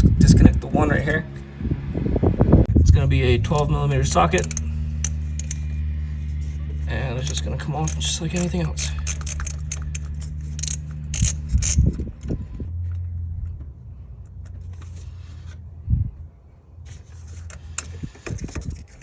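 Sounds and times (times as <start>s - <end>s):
low steady hum: 0.0s - 19.0s
small metal parts clinking: 4.2s - 12.3s, 16.9s - 19.0s
ratchet wrench clicking: 4.3s - 5.8s, 7.2s - 12.0s.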